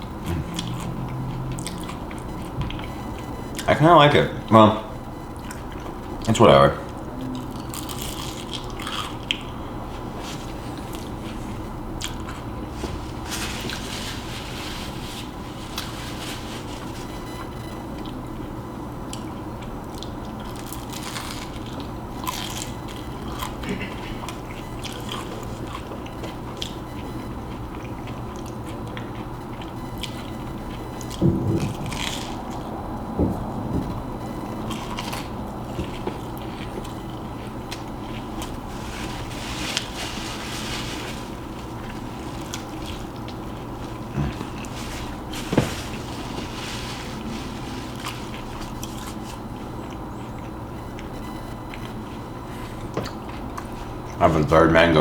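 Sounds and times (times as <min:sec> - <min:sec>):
chewing and biting: 0:00.0 - 0:03.7, 0:07.2 - 0:09.7, 0:19.1 - 0:32.7, 0:47.9 - 0:52.0, 0:52.7 - 0:54.2
chewing and crunching: 0:00.0 - 0:03.7, 0:05.4 - 0:06.3, 0:06.9 - 0:33.1, 0:33.8 - 0:54.2
low steady hum: 0:00.0 - 0:55.0
dull thump: 0:31.2 - 0:32.2, 0:33.1 - 0:34.0.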